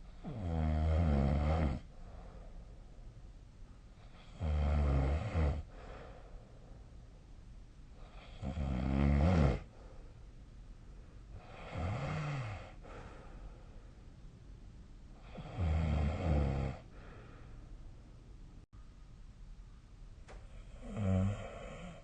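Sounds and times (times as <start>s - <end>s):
person snoring: 0.2s - 1.9s, 4.1s - 6.0s, 8.0s - 9.7s, 11.4s - 13.1s, 15.2s - 17.2s, 20.5s - 22.0s.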